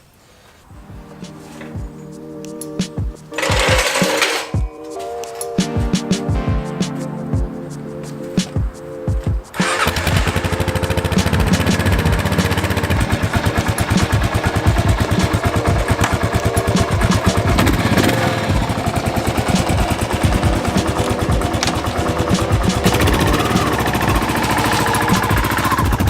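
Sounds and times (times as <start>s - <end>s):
motorcycle engine running: 9.6s - 26.0s.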